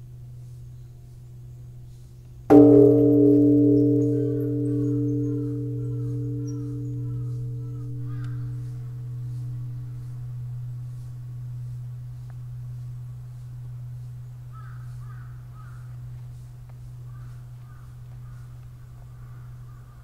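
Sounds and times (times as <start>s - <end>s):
temple bell humming: 2.5s - 14.6s.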